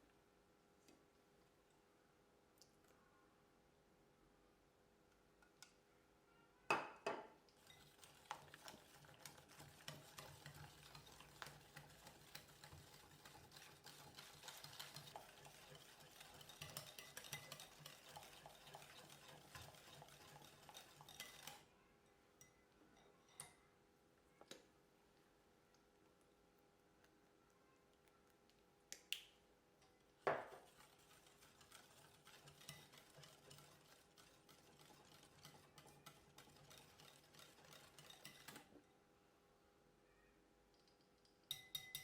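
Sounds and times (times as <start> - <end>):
utensil scraping and tapping bowl: 6.7 - 21.6, 30.2 - 38.9, 41.5 - 42.0
small clicks: 40.7 - 41.4.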